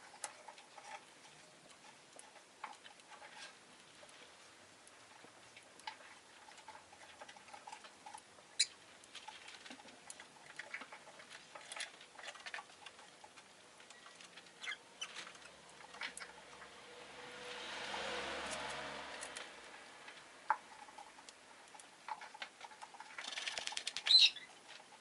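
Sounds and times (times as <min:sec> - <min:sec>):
lovebird clicks and chirps: 0:23.3 - 0:24.5.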